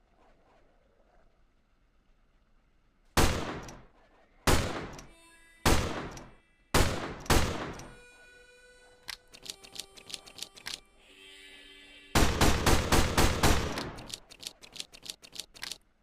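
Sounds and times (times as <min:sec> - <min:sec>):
revolver gunshots with echo: 0:03.2 - 0:05.1, 0:05.7 - 0:08.0, 0:12.2 - 0:14.2.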